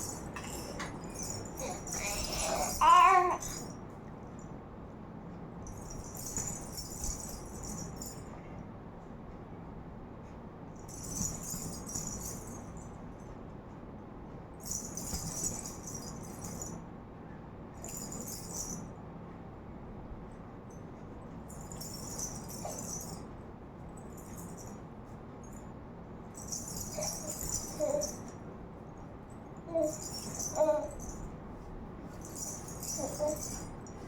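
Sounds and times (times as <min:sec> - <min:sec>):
jingling rattle shaken: 0:00.0 - 0:03.8, 0:05.7 - 0:08.4, 0:10.9 - 0:12.9, 0:14.6 - 0:16.8, 0:17.8 - 0:18.9, 0:21.4 - 0:23.4, 0:24.0 - 0:24.9, 0:26.3 - 0:28.4, 0:29.3 - 0:34.0.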